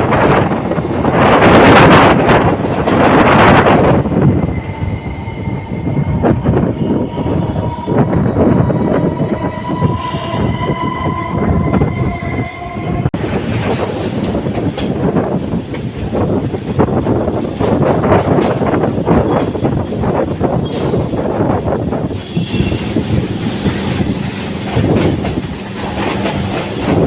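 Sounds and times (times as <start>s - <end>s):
electric train running on track: 0.0s - 27.0s
train wheel clicks: 22.8s - 27.0s.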